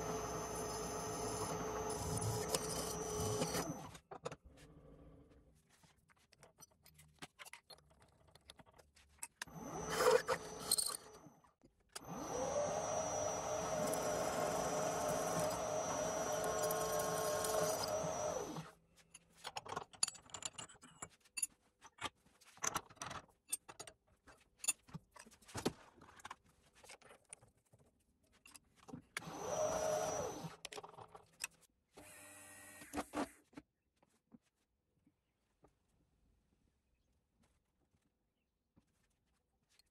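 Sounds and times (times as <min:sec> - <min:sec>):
electric motor whine: 0:00.0 - 0:03.9, 0:12.0 - 0:18.7, 0:29.2 - 0:30.5.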